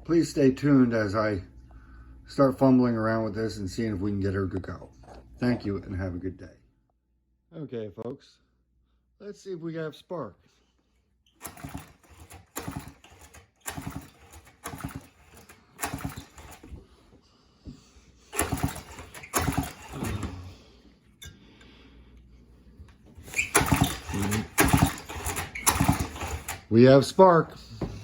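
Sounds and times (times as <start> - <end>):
chainsaw recoil starter pulls: 11.4 - 16.7, 18.3 - 20.4, 23.2 - 26.7.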